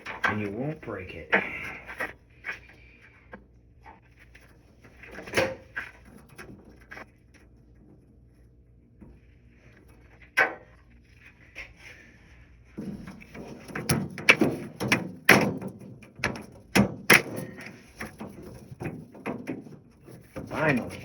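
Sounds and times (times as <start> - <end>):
sharp knocks and thumps: 12.8 - 21.0.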